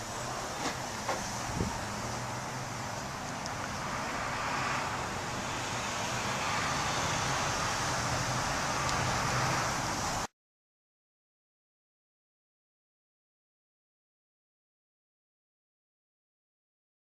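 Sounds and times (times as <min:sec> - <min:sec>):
steady rushing noise: 0:00.0 - 0:10.3.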